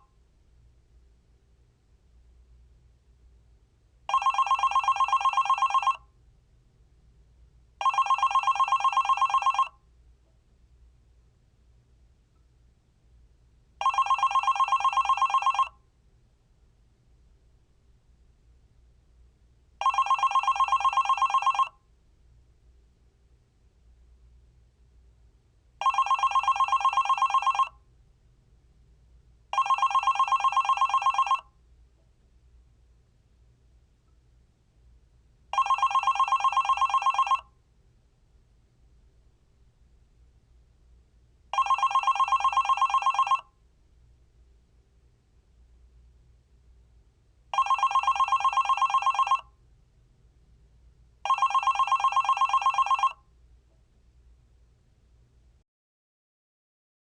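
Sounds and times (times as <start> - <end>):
telephone ringing: 4.1 - 6.1, 7.8 - 9.8, 13.8 - 15.8, 19.8 - 21.8, 25.8 - 27.8, 29.5 - 31.5, 35.5 - 37.5, 41.5 - 43.5, 47.5 - 49.5, 51.2 - 53.2.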